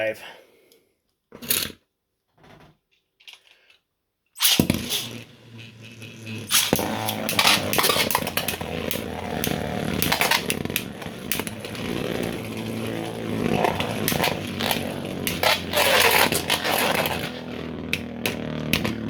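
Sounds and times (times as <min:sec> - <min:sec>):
spinning tops whirring: 0:04.4 - 0:19.0
tops clacking together: 0:06.5 - 0:19.0.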